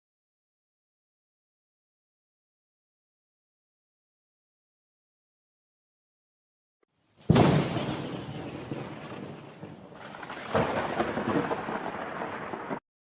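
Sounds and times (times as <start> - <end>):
loud crash: 7.2 - 12.8.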